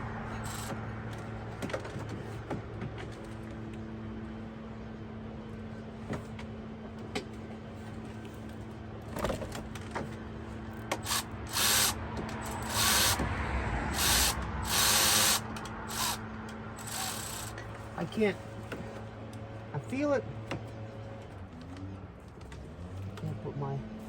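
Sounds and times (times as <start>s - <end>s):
tools scraping and ratcheting on metal: 16.8s - 17.7s.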